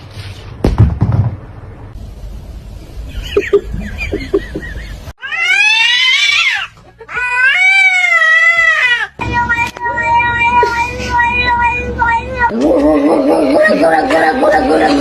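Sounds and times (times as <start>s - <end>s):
cat yowling: 5.2s - 9.0s.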